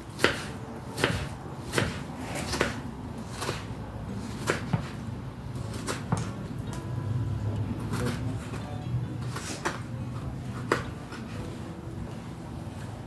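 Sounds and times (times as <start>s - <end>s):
knife chopping on cutting board: 0.1s - 5.0s, 5.6s - 6.4s.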